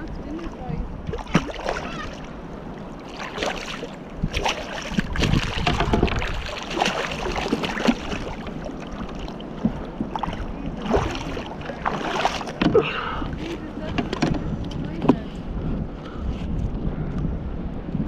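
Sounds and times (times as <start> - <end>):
water splashing around kayak: 0.0 - 16.6
wind on microphone: 0.0 - 18.0
irregular knocks: 5.6 - 6.2.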